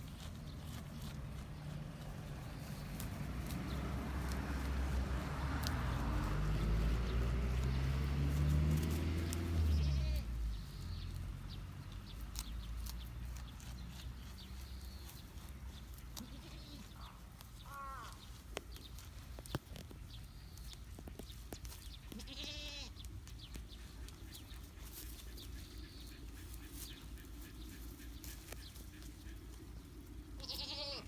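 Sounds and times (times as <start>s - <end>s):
baby goat bleating: 9.7s - 10.3s, 16.1s - 17.0s, 22.1s - 23.0s, 30.4s - 31.0s.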